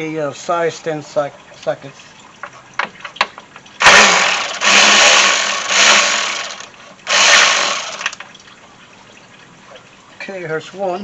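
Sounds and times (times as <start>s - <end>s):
power tool bursts: 3.8s - 8.2s.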